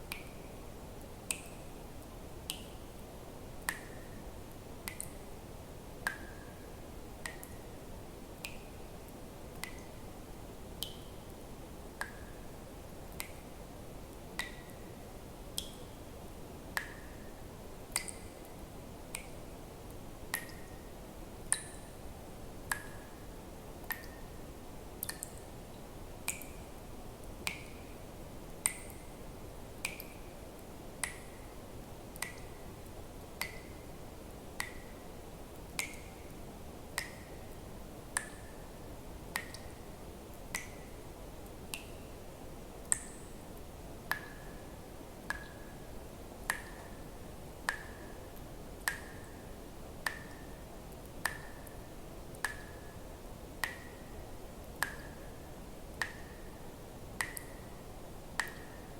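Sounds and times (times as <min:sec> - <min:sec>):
steady low hiss: 0:00.0 - 0:58.9
water drops plinking into water: 0:00.1 - 0:00.4, 0:04.8 - 0:05.2, 0:07.2 - 0:07.6, 0:09.5 - 0:10.0, 0:10.8 - 0:11.4, 0:14.4 - 0:14.8, 0:17.9 - 0:19.4, 0:20.3 - 0:20.8, 0:21.5 - 0:21.9, 0:22.7 - 0:23.1, 0:23.8 - 0:24.2, 0:25.0 - 0:25.5, 0:26.2 - 0:26.7, 0:27.4 - 0:27.9, 0:31.0 - 0:31.4, 0:32.1 - 0:32.6, 0:33.4 - 0:33.8, 0:34.6 - 0:35.0, 0:35.7 - 0:37.4, 0:39.3 - 0:39.8, 0:40.5 - 0:40.9, 0:42.8 - 0:43.2, 0:44.1 - 0:44.6, 0:45.3 - 0:45.7, 0:46.4 - 0:47.0, 0:48.8 - 0:49.4, 0:50.0 - 0:52.8, 0:53.6 - 0:54.0, 0:54.7 - 0:55.2, 0:57.2 - 0:57.6, 0:58.4 - 0:58.8.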